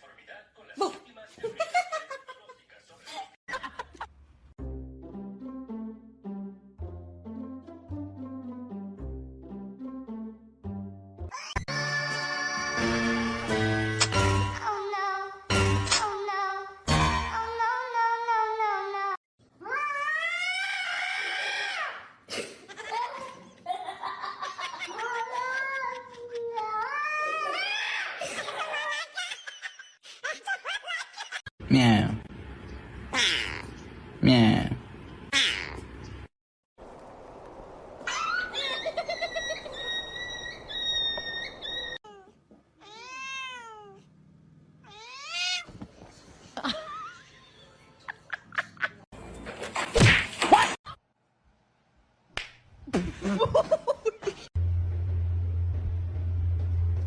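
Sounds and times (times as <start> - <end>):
cat yowling: 42.0 - 44.0, 44.8 - 45.7.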